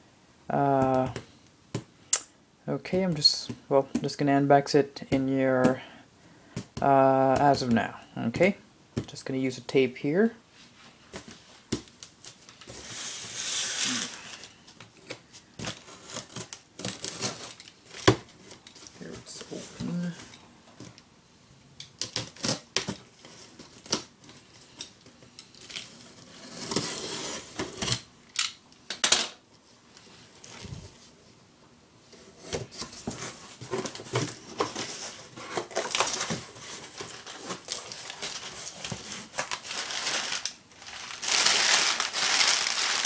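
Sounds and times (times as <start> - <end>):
packing material crinkling: 33.6 - 43.0.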